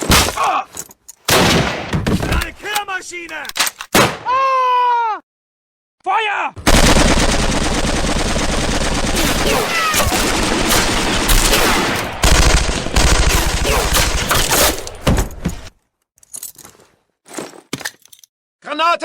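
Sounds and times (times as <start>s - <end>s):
machine-gun and rifle fire: 6.7s - 15.0s
scattered shots: 6.7s - 15.0s.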